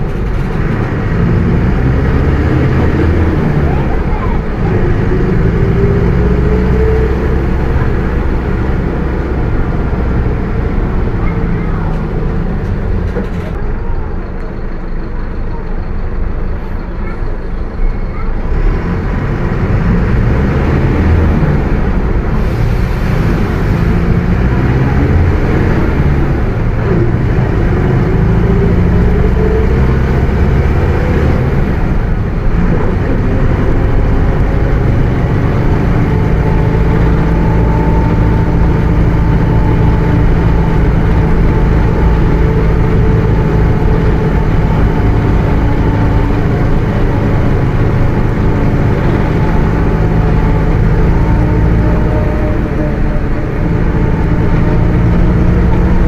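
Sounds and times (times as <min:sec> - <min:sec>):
bus diesel engine running: 0:00.0 - 0:56.0
differential whining: 0:23.7 - 0:56.0.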